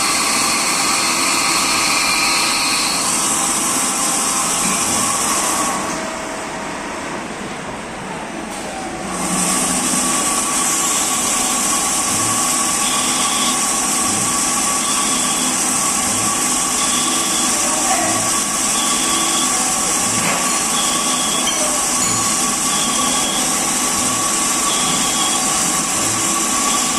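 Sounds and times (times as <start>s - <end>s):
lathe cutting hiss with held tone: 0.0s - 3.6s.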